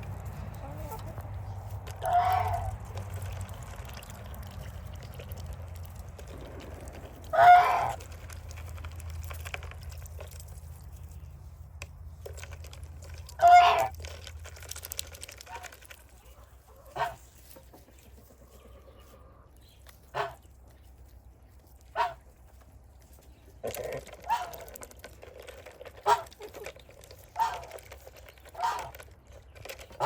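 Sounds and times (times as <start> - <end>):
chickens calling: 0.0 - 8.3, 13.3 - 13.9, 15.4 - 20.6, 23.3 - 25.0, 26.0 - 30.0.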